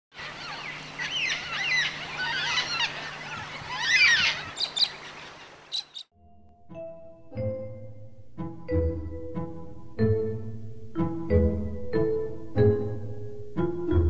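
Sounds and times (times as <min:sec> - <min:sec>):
birds chirping: 0:00.1 - 0:06.2
steady low hum: 0:06.2 - 0:13.6
soft music notes: 0:06.2 - 0:14.0.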